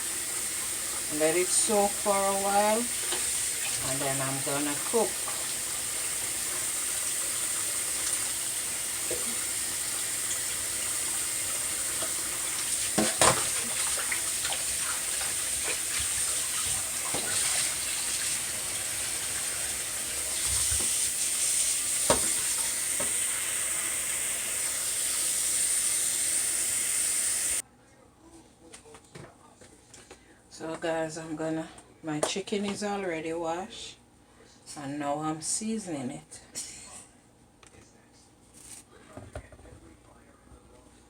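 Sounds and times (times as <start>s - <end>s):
tap water running into sink: 0.0s - 27.6s
knocks in sink: 22.0s - 22.4s.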